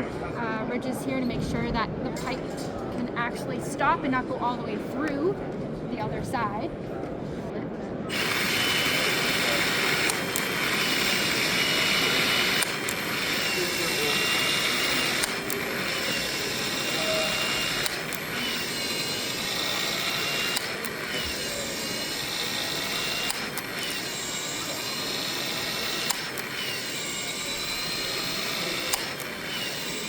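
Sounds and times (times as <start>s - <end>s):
expansion tool motor whine: 8.1s - 30.0s
tool clicking: 8.1s - 30.0s.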